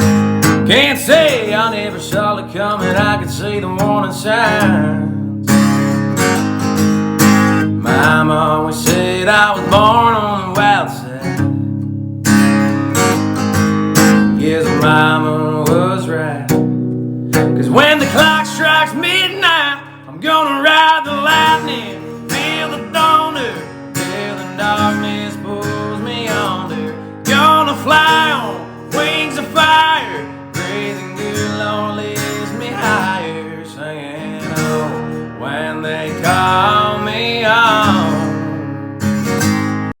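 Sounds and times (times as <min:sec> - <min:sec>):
strummed acoustic guitar: 0:00.0 - 0:40.0
man singing: 0:00.6 - 0:05.7, 0:07.7 - 0:11.6, 0:14.1 - 0:16.7, 0:17.4 - 0:38.9.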